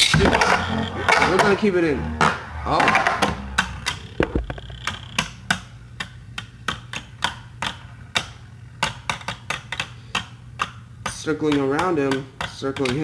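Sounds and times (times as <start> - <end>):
low hum: 0.0 - 6.0.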